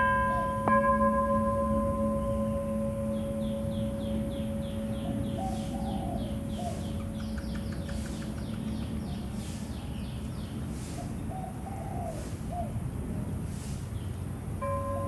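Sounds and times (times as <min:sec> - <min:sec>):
temple bell hum: 0:00.0 - 0:08.1, 0:14.6 - 0:15.0
lower warbling bird calls: 0:02.2 - 0:12.8
small birds chirping: 0:02.2 - 0:14.2.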